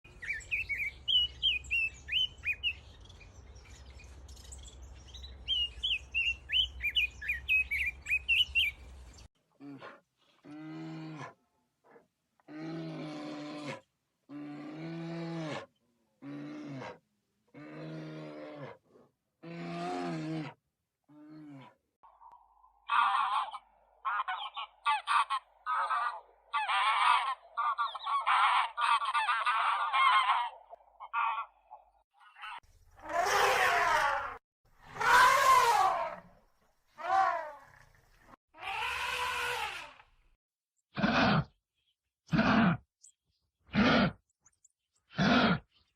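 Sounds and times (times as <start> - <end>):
low-pitched animal call: 32.5 - 36.4, 37.0 - 37.8, 38.6 - 40.0.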